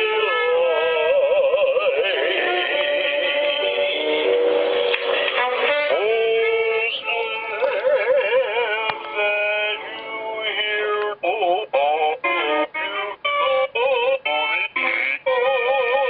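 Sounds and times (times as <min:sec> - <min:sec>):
synthetic singing voice with vibrato: 0:00.0 - 0:04.0, 0:05.4 - 0:16.0.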